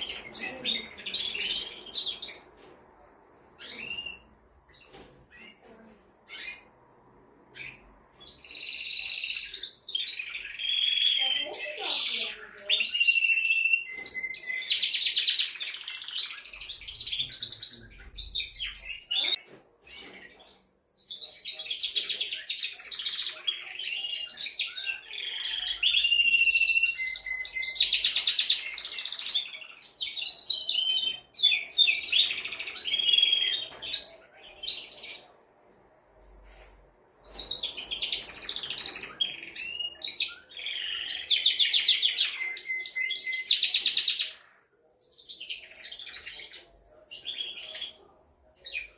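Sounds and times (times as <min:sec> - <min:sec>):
canary singing trills: 0:00.0 - 0:02.6, 0:03.6 - 0:06.8, 0:07.4 - 0:35.4, 0:37.2 - 0:48.9.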